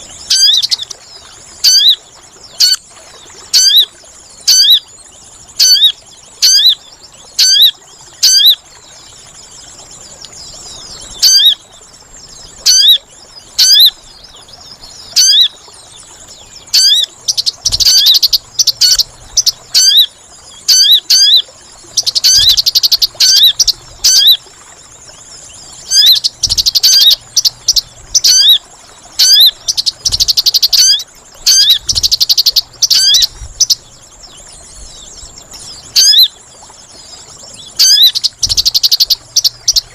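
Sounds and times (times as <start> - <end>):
buzzy bird trills: 16.7 - 24.4, 25.8 - 28.6, 29.2 - 33.8, 37.6 - 39.9.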